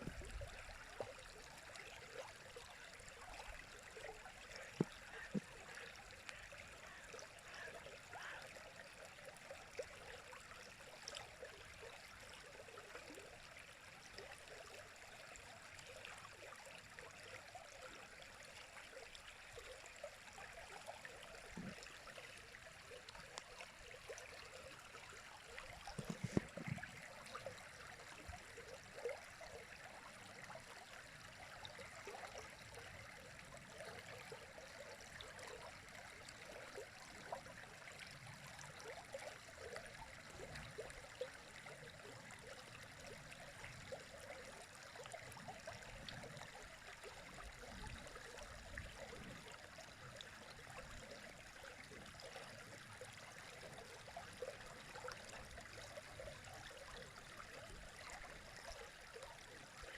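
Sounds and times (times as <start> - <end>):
river water over stones: 0.0 - 59.9.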